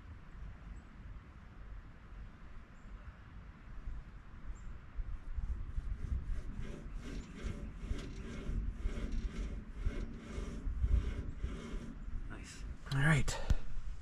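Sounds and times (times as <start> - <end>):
rubbing or scraping strokes: 5.2 - 13.2.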